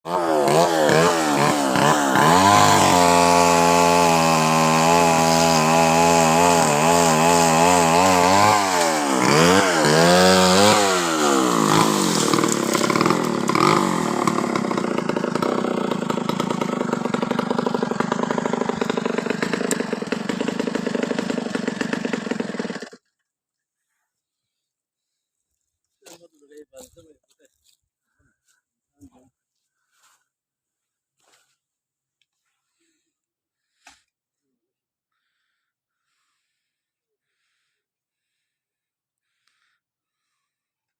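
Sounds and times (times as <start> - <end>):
chainsaw revving and cutting wood: 0.0 - 23.2.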